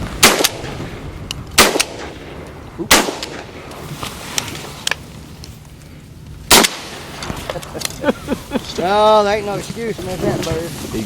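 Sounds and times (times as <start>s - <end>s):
shotgun blasts: 0.2s - 3.7s, 6.5s - 7.3s.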